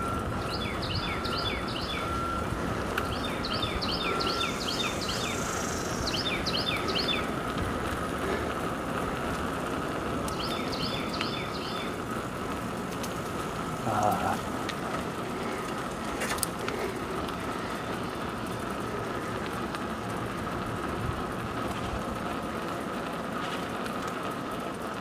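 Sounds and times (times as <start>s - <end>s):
steady rushing background noise: 0.0s - 25.0s
bird chirping: 0.4s - 2.3s, 3.0s - 7.3s, 10.3s - 12.0s.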